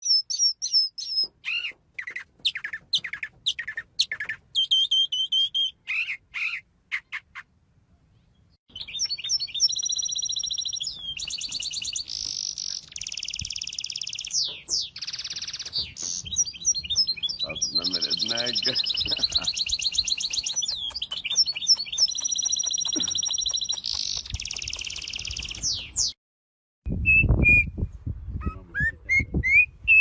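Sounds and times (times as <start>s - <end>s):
bird song of fast trills: 0.0s - 7.5s, 8.2s - 26.2s
songbirds chirping: 0.0s - 26.2s.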